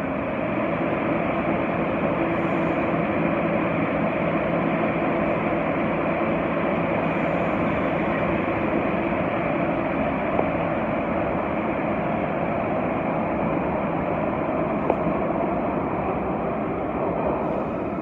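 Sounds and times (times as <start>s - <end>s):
low motor hum: 0.0s - 18.0s
subway train rumbling: 0.0s - 18.0s.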